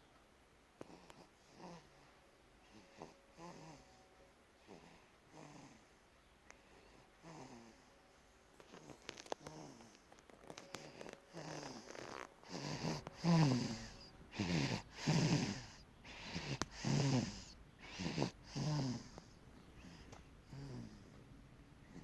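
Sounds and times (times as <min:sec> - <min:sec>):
person snoring: 0:10.7 - 0:21.1.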